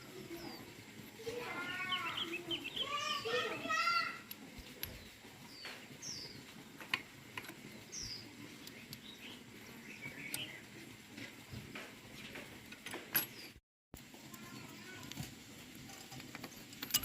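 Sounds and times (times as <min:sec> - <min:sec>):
birds chirping: 0:00.0 - 0:13.6.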